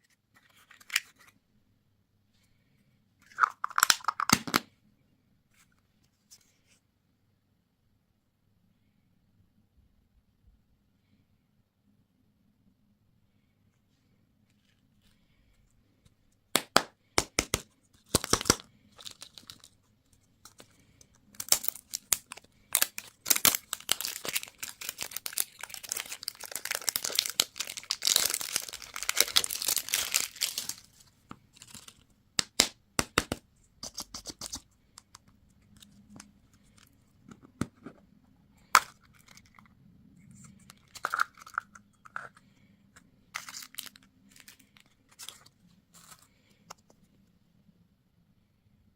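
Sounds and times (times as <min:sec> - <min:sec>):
candy wrappers crinkling: 0:17.2 - 0:32.0, 0:40.3 - 0:42.5, 0:43.3 - 0:46.5.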